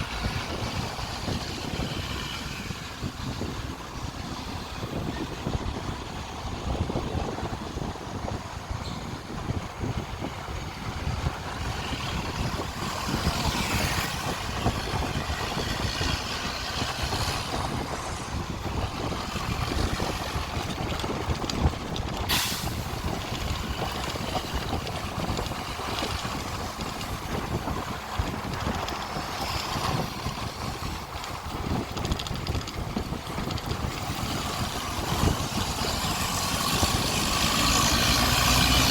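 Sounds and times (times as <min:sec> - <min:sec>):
diesel bus engine running: 0:00.0 - 0:38.9
air brakes hissing: 0:22.2 - 0:23.2.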